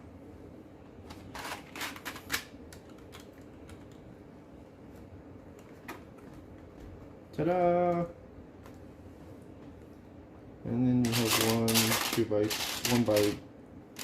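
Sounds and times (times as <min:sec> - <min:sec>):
plastic bricks clicking and rattling: 0:11.0 - 0:13.4.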